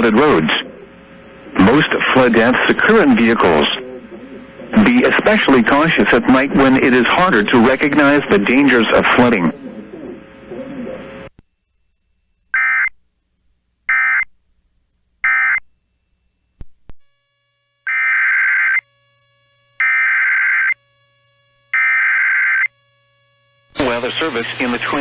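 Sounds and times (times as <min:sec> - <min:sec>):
faint low hum: 0:00.0 - 0:25.0
two-tone electronic data bursts: 0:12.5 - 0:12.9, 0:15.2 - 0:15.6, 0:17.3 - 0:25.0.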